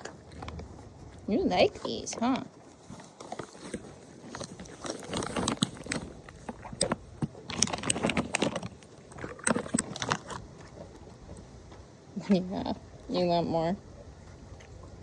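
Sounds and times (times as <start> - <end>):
horse chewing crunchy treats: 0.0 - 15.0.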